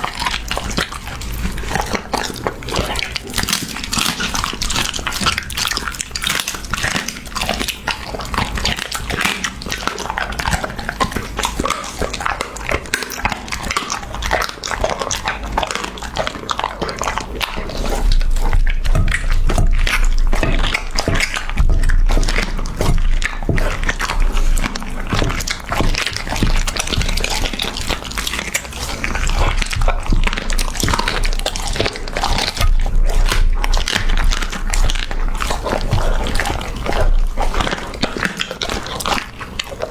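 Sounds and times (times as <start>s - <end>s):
puppy chewing meat: 0.0s - 39.9s
low thuds: 18.2s - 37.4s.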